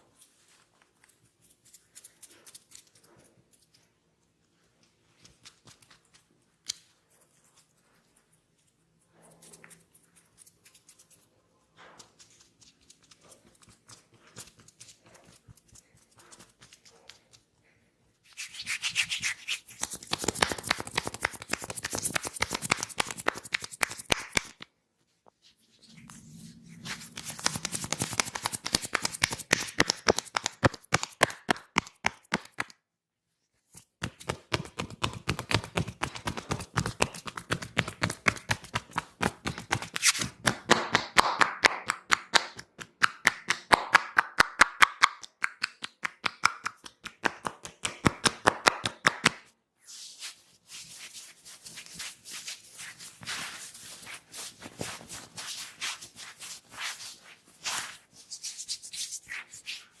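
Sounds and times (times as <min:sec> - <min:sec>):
hands rubbing oiled hair: 0:18.3 - 0:24.7, 0:25.4 - 0:32.7, 0:49.9 - 1:00.0.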